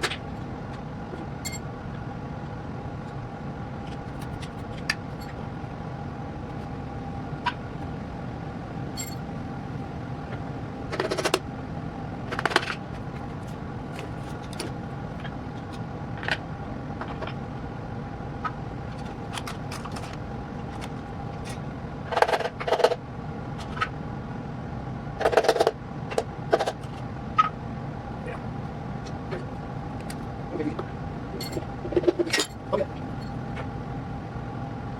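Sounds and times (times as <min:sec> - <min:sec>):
steady hum with held tones: 0:00.0 - 0:34.9
metal tools clinking and clanking: 0:09.0 - 0:09.2, 0:31.4 - 0:33.4.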